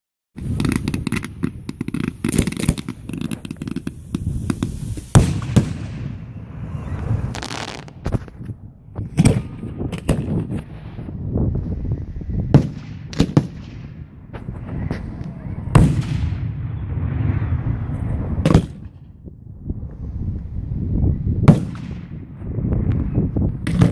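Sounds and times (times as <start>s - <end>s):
firework hissing rush: 0.4s - 8.4s
firework bangs: 0.4s - 11.4s, 12.4s - 19.9s, 21.4s - 22.8s, 23.5s - 23.9s
fireworks crackling: 0.4s - 20.6s.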